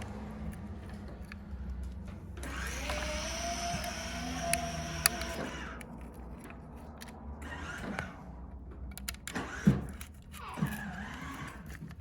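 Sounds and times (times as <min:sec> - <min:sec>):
small motor whirring: 0:02.4 - 0:12.0.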